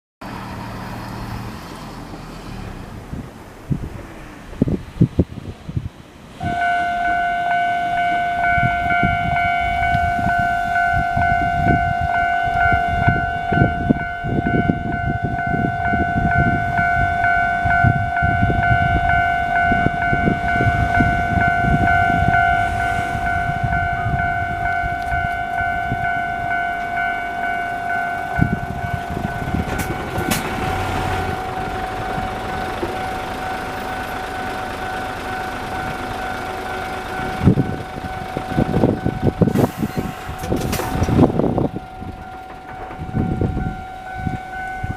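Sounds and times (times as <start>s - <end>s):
level-crossing alarm bell: 6.4s - 44.9s
train wheel clatter: 28.2s - 44.9s.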